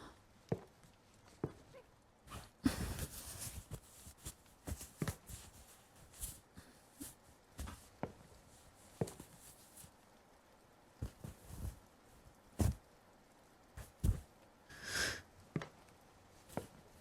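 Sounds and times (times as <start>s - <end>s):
taps knocks and rustles: 9.0s - 9.4s, 13.8s - 14.3s.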